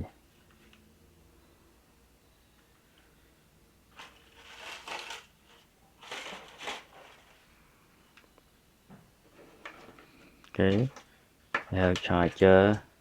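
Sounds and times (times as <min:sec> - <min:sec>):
packaging rustling and crinkling: 0:03.9 - 0:07.5.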